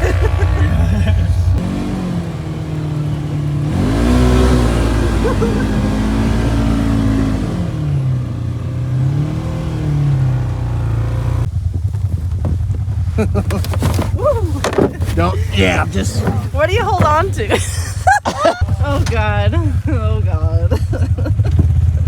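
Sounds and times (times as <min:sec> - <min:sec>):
engine revving: 0:00.0 - 0:17.6.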